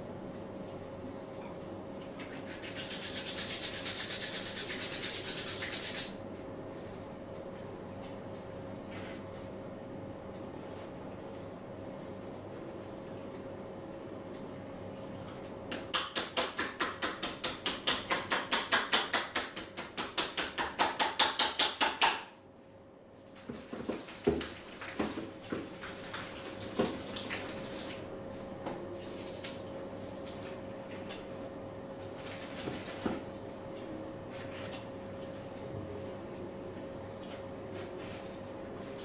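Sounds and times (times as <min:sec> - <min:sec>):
faint steady hum: 0:00.0 - 0:21.2
hands slapping body rhythmically: 0:15.7 - 0:22.4.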